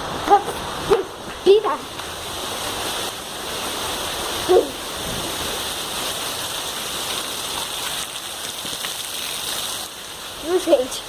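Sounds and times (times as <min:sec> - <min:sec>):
heavy rain: 0:00.0 - 0:11.0
running water: 0:00.0 - 0:11.0.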